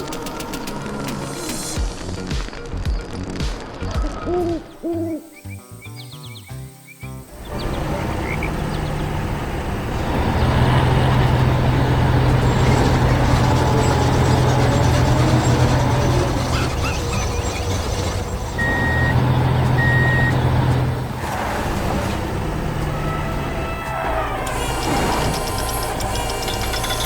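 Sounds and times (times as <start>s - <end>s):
diesel engine droning: 7.3s - 27.0s
reversing alarm beeps: 18.6s - 20.5s.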